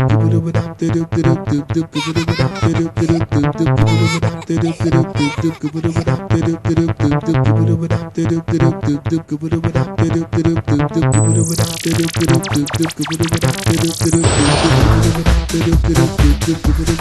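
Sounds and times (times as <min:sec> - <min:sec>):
electronic dance music: 0:02.0 - 0:06.1, 0:11.1 - 0:17.0
filtered noise sweep: 0:11.2 - 0:15.2.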